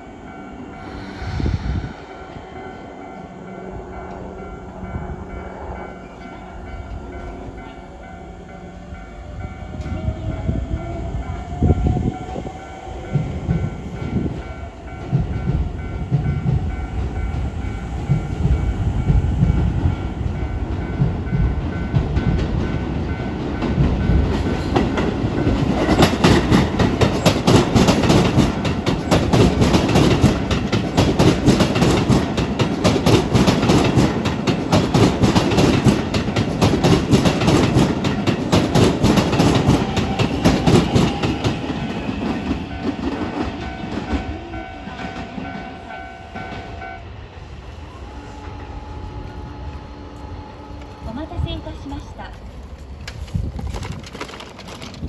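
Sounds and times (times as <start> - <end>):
train rumble: 0.0 - 55.0
crossing warning bell: 3.1 - 47.1
train wheels clattering over rail joints: 20.7 - 46.7, 52.3 - 55.0.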